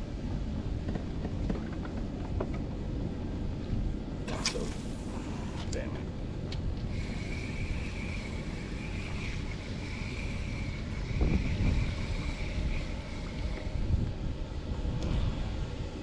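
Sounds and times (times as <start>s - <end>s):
wind buffeting microphone: 0.0s - 16.0s
faint high whine: 4.3s - 14.4s.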